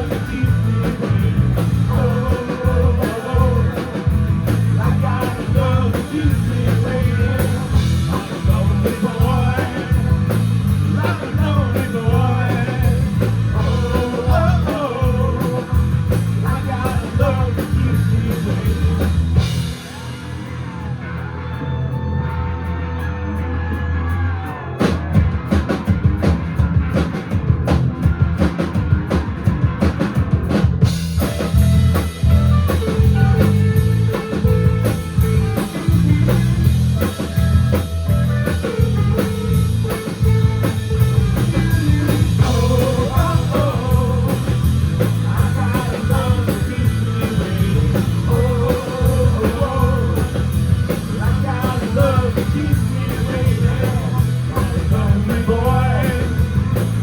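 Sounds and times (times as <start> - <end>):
person singing: 0.0 - 20.2, 41.3 - 56.6
live rock band playing: 0.0 - 57.0.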